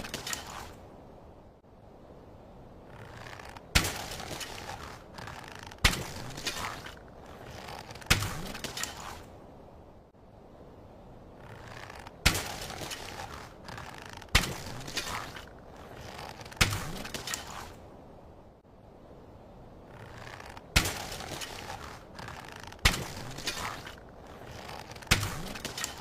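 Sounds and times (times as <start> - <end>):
slingshot cracks with clatter: 0.0 - 0.8, 3.7 - 9.2, 11.7 - 17.8, 20.7 - 26.0.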